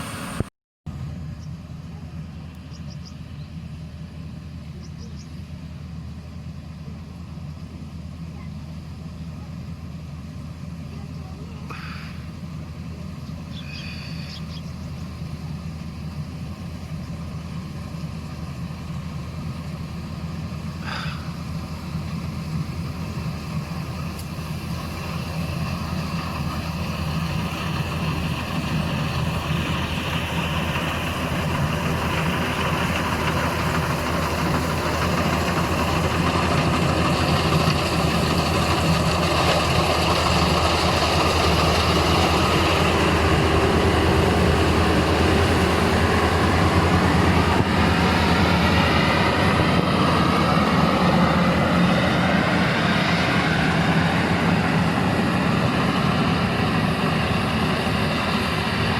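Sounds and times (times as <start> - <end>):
hiss of working machine: 0.0 - 0.5, 20.6 - 49.0
diesel engine running: 0.0 - 58.9.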